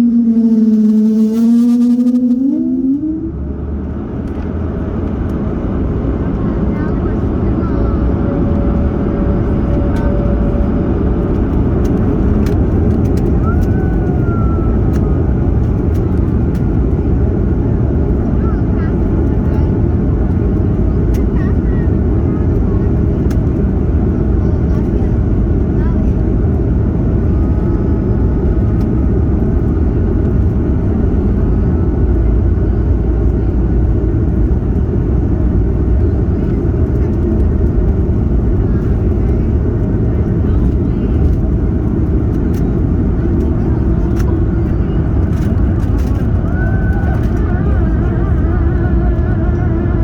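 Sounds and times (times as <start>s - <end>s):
faint whining tones: 0.0s - 3.8s
jet engines and air rush in cabin: 0.0s - 50.0s
light clicks and rattles: 42.3s - 48.1s.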